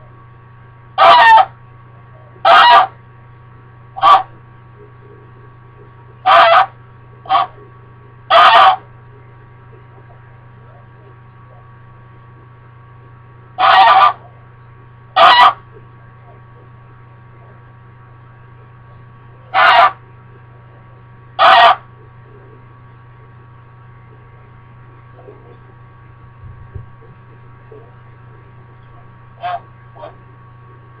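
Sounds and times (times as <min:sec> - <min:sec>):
goose honking: 0:01.0 - 0:01.5, 0:02.4 - 0:03.0, 0:04.0 - 0:04.3, 0:06.2 - 0:07.6, 0:08.3 - 0:08.9, 0:13.6 - 0:14.3, 0:15.2 - 0:15.7, 0:19.5 - 0:20.0, 0:21.4 - 0:21.9, 0:28.8 - 0:30.2.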